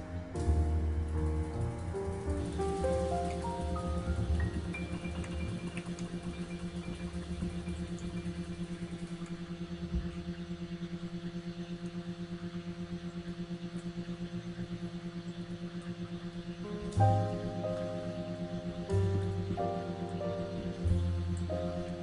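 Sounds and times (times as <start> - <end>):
pulsing low music note: 0.0 - 22.0.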